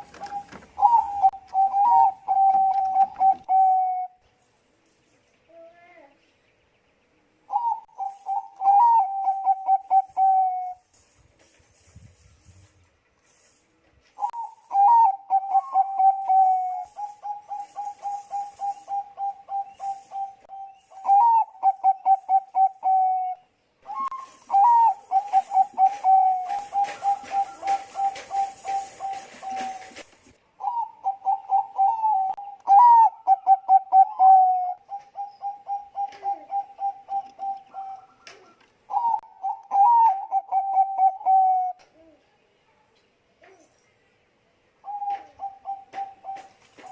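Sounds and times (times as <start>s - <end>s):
dove cooing: 0.0s - 4.2s, 7.5s - 10.8s, 14.2s - 42.2s, 44.8s - 46.9s.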